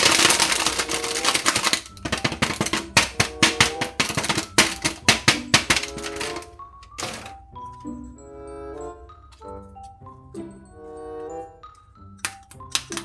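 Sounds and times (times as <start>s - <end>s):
plastic packaging crackling: 0.0s - 7.3s.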